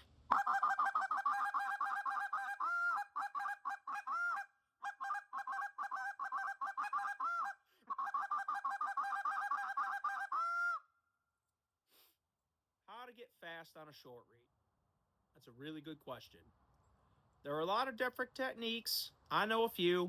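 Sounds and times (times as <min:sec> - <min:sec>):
goose call clucks: 0:00.0 - 0:10.8
goose call honks: 0:00.3 - 0:10.8.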